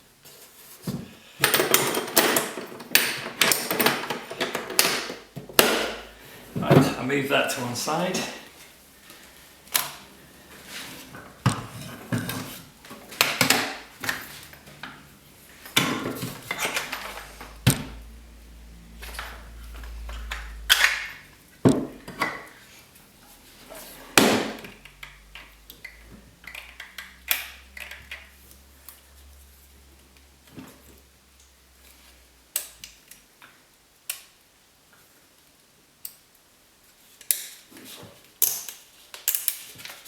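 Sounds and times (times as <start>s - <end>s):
jigsaw and case knocking: 1.4s - 6.1s.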